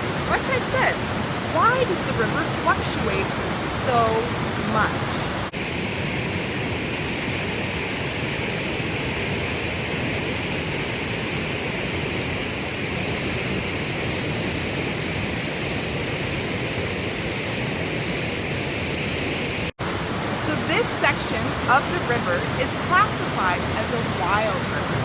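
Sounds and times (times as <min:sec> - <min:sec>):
waterfall roaring: 0:00.0 - 0:05.5, 0:18.2 - 0:25.0.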